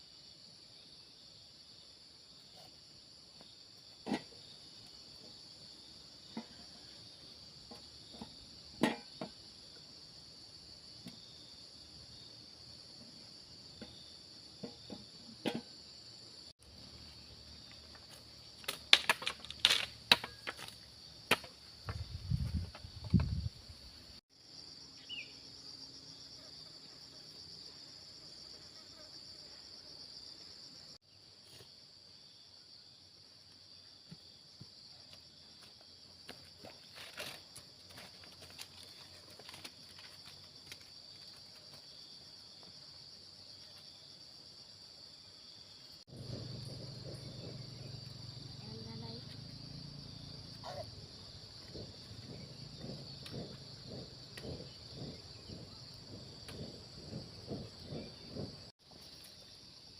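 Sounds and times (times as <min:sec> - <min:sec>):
crickets chirring: 0:00.0 - 0:59.9
high-pitched insect chorus: 0:00.0 - 0:59.9.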